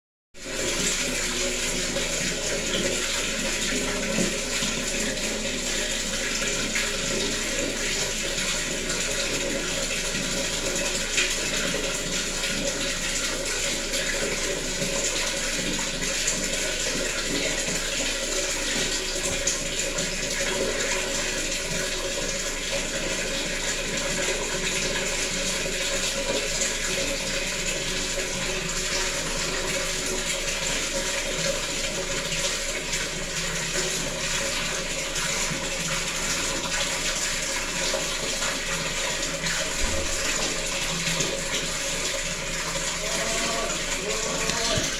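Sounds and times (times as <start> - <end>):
water rushing: 34.2 - 44.9.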